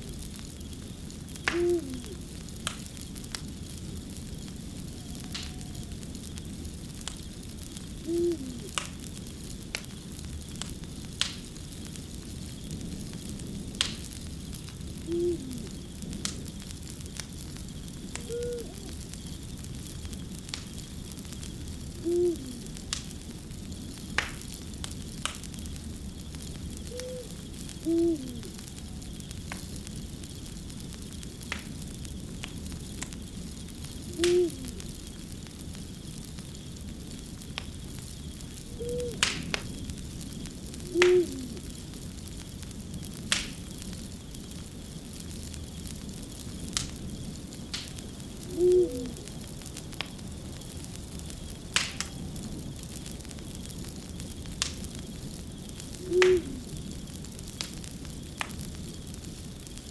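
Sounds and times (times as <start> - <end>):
fire crackling and popping: 0.0 - 59.9
owl hooting: 1.5 - 2.2, 4.8 - 6.0, 8.0 - 8.8, 15.0 - 15.8, 18.2 - 19.0, 22.0 - 22.8, 26.8 - 29.1, 34.1 - 34.8, 38.7 - 39.2, 40.8 - 41.6, 48.5 - 49.3, 56.0 - 56.7.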